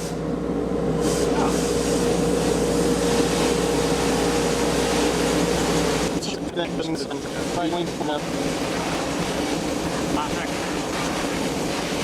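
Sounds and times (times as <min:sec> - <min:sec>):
machine hum: 0:00.2 - 0:12.0
sandblaster air hiss: 0:01.0 - 0:05.3.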